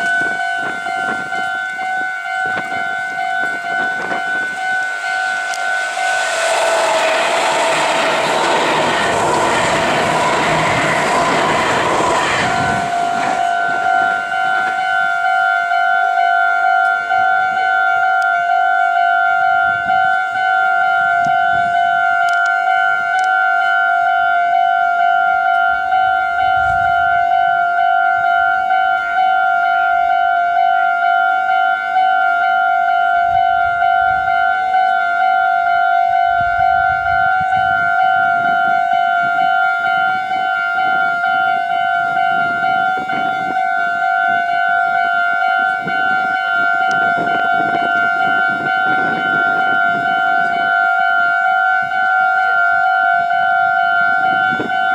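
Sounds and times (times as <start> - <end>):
level-crossing alarm ringing: 0.0 - 54.9
electric train rushing past: 2.3 - 17.3, 32.1 - 43.6, 44.3 - 54.9.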